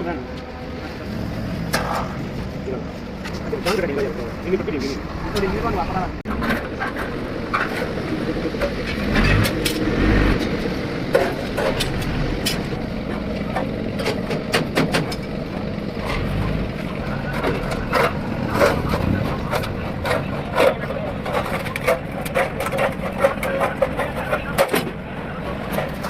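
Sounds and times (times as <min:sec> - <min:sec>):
low rumble: 0:16.0 - 0:22.2.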